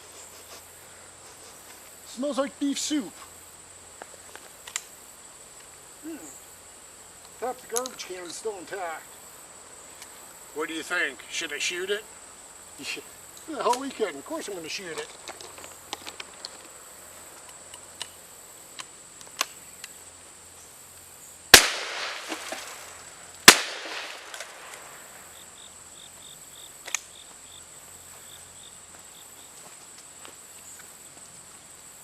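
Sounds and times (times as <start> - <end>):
high insect buzz: 0.0 - 32.0
shotgun blasts with echo: 21.5 - 22.8, 23.4 - 24.8.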